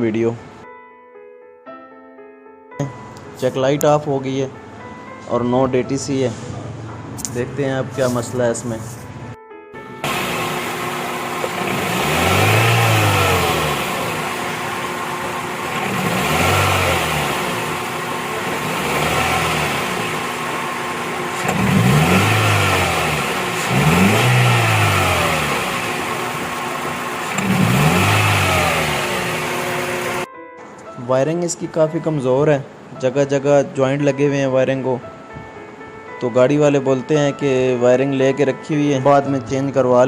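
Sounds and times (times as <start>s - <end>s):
misfiring car engine revving: 10.0s - 30.3s.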